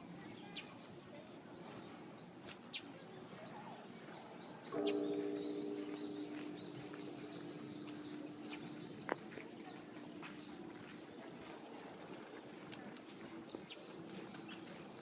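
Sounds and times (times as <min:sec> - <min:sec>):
small birds chirping: 0:01.7 - 0:11.6
temple bell ringing: 0:04.7 - 0:11.0.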